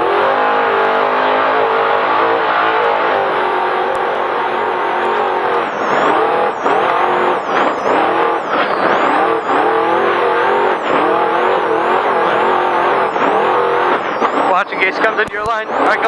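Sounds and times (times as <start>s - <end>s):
constant rushing noise: 0.0s - 16.0s
race engine revving: 0.0s - 16.0s.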